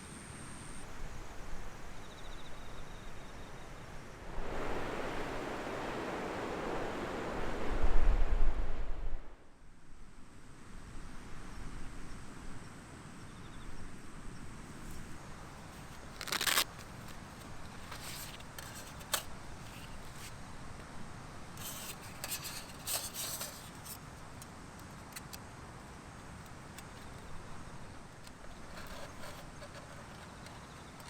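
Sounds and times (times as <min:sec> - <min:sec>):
steady wind noise: 0:00.8 - 0:31.0
camping gear rustling and crinkling: 0:14.6 - 0:31.0.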